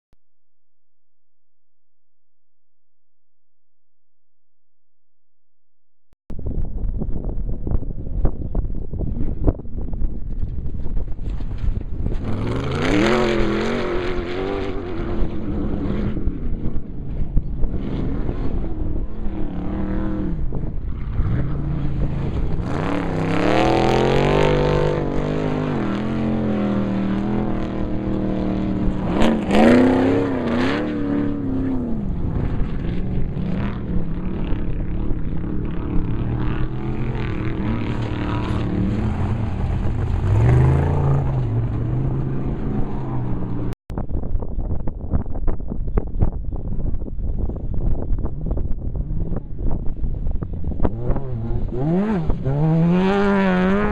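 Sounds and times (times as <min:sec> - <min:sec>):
off-road vehicle engine revving: 0:12.1 - 0:43.8, 0:50.8 - 0:53.9.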